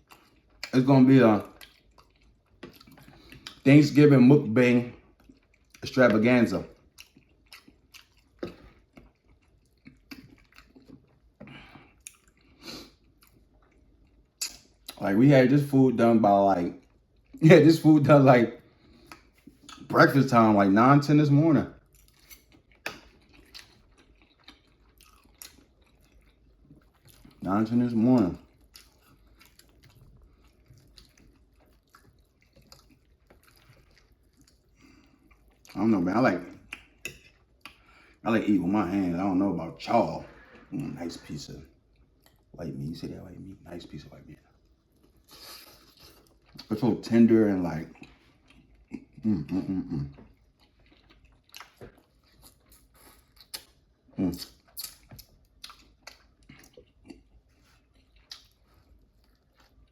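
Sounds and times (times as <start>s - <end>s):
close chewing sounds: 0.0s - 20.6s, 21.7s - 59.9s
wet chewing clicks: 6.7s - 15.0s, 21.8s - 27.4s, 47.8s - 59.9s
lip smacking: 47.9s - 59.9s.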